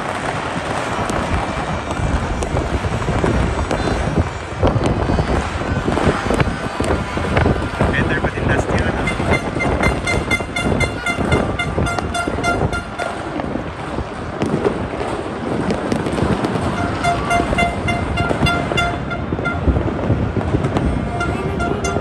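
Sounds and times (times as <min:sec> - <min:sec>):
fireworks crackling and popping: 0:00.0 - 0:22.0
horn tooting short blasts: 0:08.8 - 0:13.2, 0:16.7 - 0:19.8.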